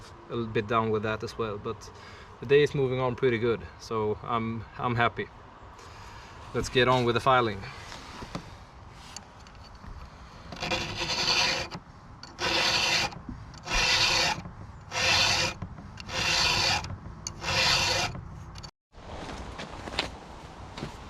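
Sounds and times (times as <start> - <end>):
file rasping on chainsaw chain: 10.4 - 18.7.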